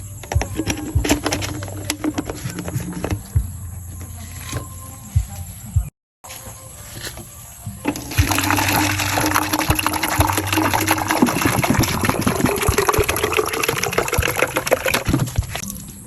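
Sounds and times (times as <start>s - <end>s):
water gushing and splashing: 7.9s - 15.7s.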